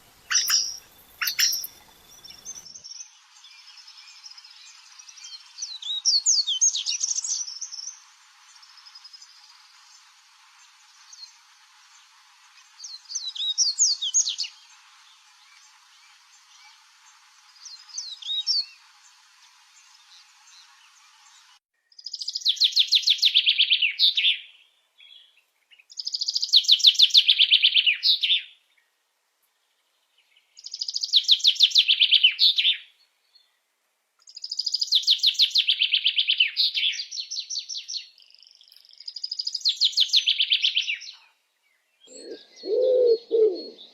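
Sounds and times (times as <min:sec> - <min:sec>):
bird chirps: 0:00.0 - 0:10.1, 0:19.8 - 0:28.5, 0:34.2 - 0:43.9
faint hiss: 0:00.0 - 0:43.9.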